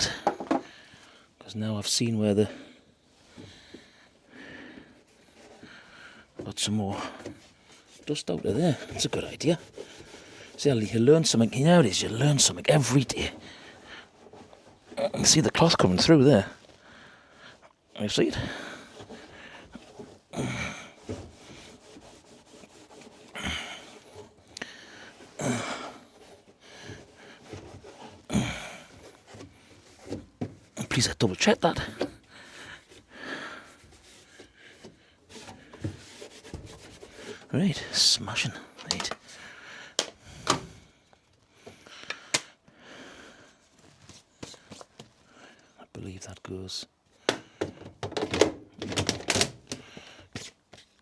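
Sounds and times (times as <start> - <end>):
plastic parts clicking and knocking: 0.0 - 0.8, 38.7 - 40.8, 41.6 - 42.6, 47.2 - 50.6
cloth rubbing inside dryer housing: 0.0 - 1.2, 2.2 - 41.8, 42.6 - 45.6, 46.9 - 51.0.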